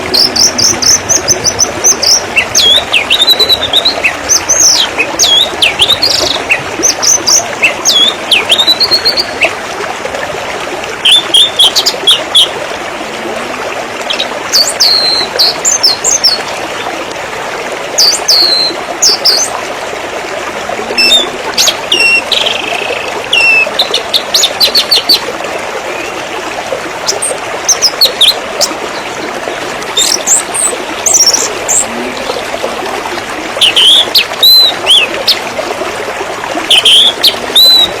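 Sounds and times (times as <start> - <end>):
songbirds chirping and whistling: 0.0 - 9.5, 18.0 - 19.5, 21.0 - 25.2, 33.6 - 35.2, 36.7 - 38.0
river water flowing: 0.0 - 38.0.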